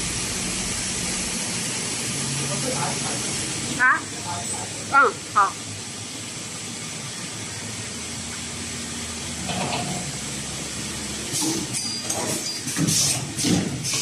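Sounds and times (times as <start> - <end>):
machine humming: 0.0 - 11.4
sharp machine clacks and hisses: 11.3 - 14.0.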